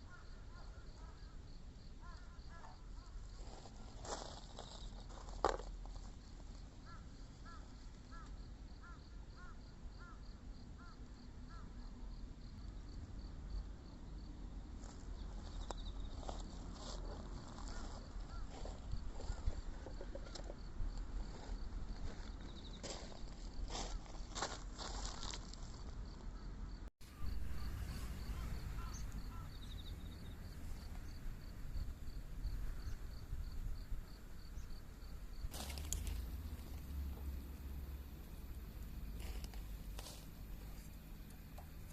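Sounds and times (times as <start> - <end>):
insect chirping: 0.0 - 41.9
bird calling: 6.8 - 10.2, 17.6 - 18.6, 27.0 - 30.4.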